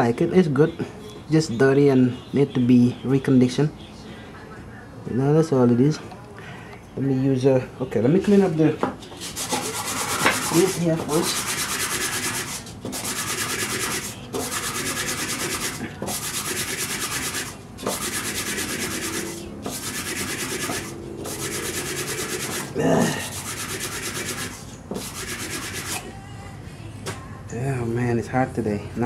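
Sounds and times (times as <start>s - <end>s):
scrubbing engine valve: 9.3s - 26.1s.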